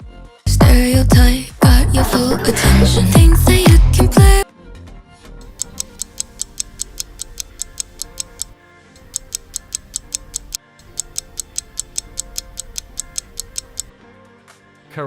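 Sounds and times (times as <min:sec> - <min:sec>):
pop music: 0:00.5 - 0:04.4
fast even ticking: 0:05.6 - 0:08.5, 0:09.1 - 0:13.9.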